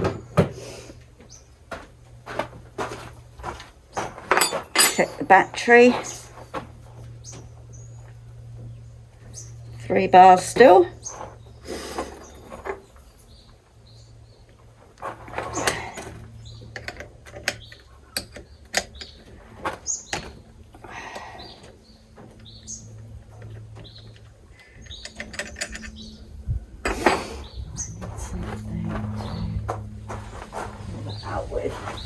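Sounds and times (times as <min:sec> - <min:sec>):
birds chirping: 0:00.0 - 0:32.0
tool clicks and knocks: 0:01.7 - 0:06.7.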